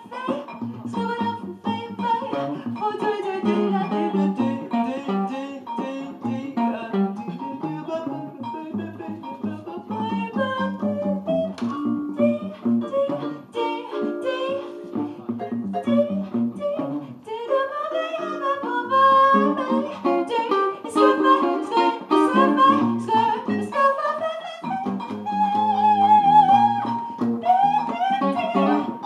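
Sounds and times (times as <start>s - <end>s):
small band playing live: 0.0s - 17.3s, 18.0s - 29.0s
person singing: 0.0s - 29.0s
plucked guitar: 0.0s - 29.0s.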